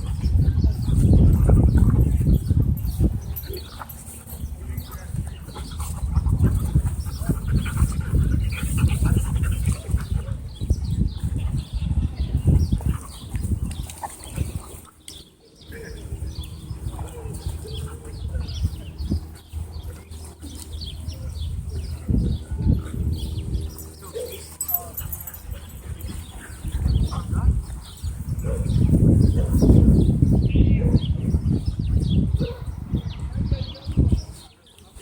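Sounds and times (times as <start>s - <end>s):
dogs panting: 0.0s - 30.1s
small birds chirping: 0.0s - 35.0s
wind on the microphone: 0.0s - 35.0s
dogs moving about: 22.8s - 29.6s.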